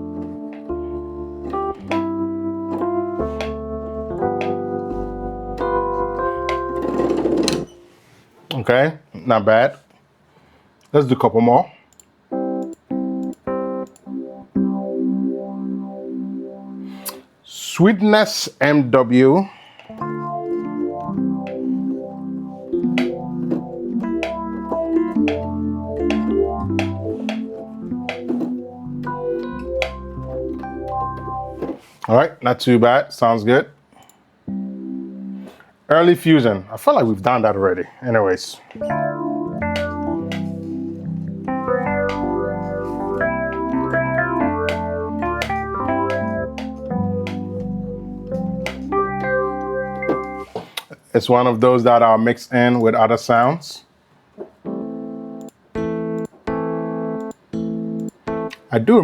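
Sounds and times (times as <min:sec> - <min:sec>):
bass line: 0:00.0 - 0:07.7, 0:20.7 - 0:31.6, 0:38.8 - 0:50.4
electric piano chords: 0:00.0 - 0:08.1, 0:12.3 - 0:17.2, 0:19.9 - 0:31.9, 0:34.4 - 0:35.6, 0:38.8 - 0:50.5, 0:54.6 - 0:59.0.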